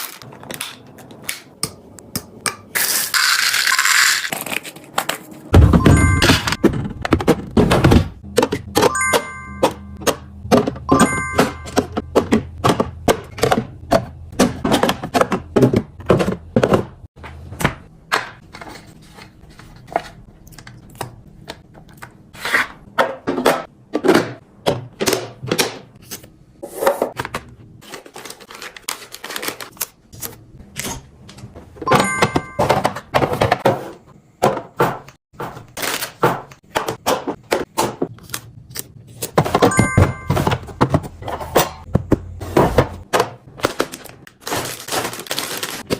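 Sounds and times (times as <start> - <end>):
plastic containers being handled: 10.0 - 25.9, 39.2 - 45.9.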